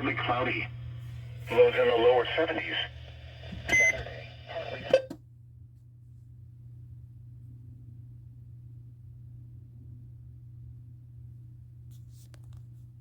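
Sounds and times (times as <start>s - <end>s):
low electrical hum: 0.0s - 13.0s.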